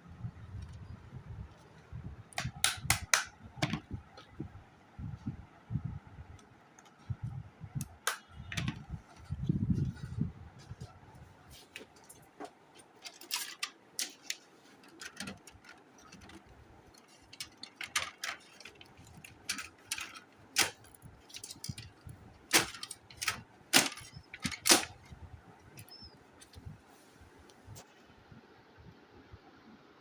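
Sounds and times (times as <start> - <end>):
plastic parts clicking and knocking: 2.3 - 4.4, 7.8 - 9.4, 11.8 - 26.6.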